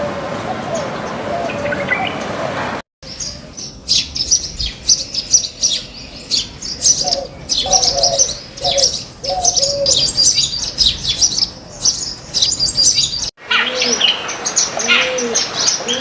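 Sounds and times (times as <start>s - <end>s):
birds chirping: 3.0s - 15.5s
low cooing: 3.1s - 13.3s.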